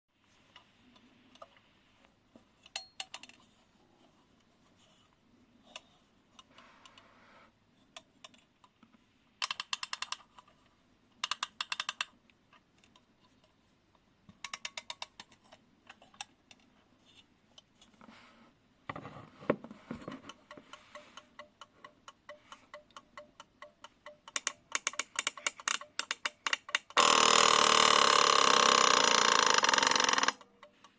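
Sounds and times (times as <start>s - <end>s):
mechanical clicks: 11.2s - 12.2s, 20.7s - 30.9s
clock ticking: 20.2s - 30.9s
alarm clock ringing: 27.0s - 30.4s.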